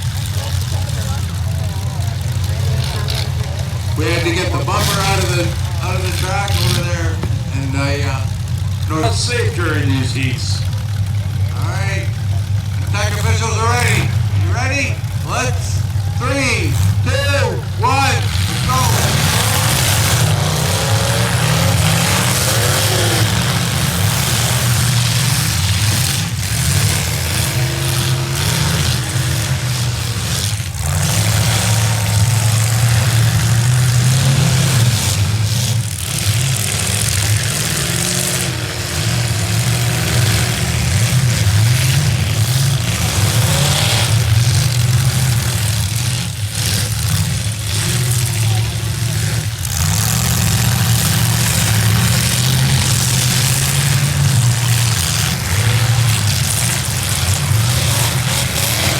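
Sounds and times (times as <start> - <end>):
car engines revving: 0.0 - 58.9.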